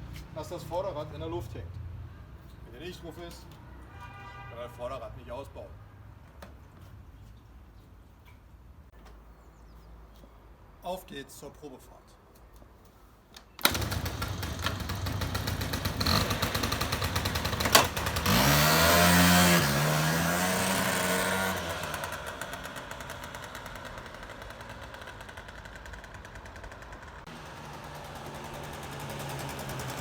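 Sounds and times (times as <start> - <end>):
scooter engine running: 13.6 - 30.0.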